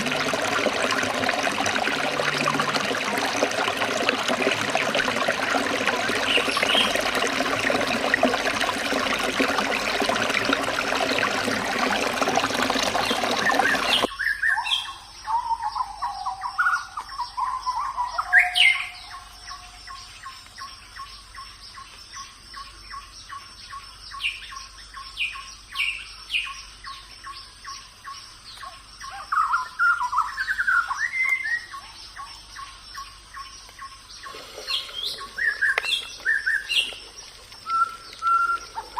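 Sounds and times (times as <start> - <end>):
water running in a stream: 0.0 - 14.1, 27.8 - 38.9
birds chirping and whistling: 29.0 - 37.0, 37.6 - 38.9.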